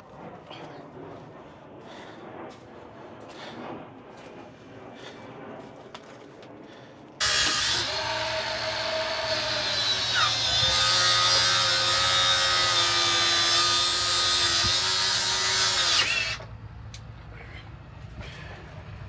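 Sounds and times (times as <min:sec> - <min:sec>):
loud hiss: 0:07.2 - 0:16.4
power tool motor running: 0:07.2 - 0:16.4.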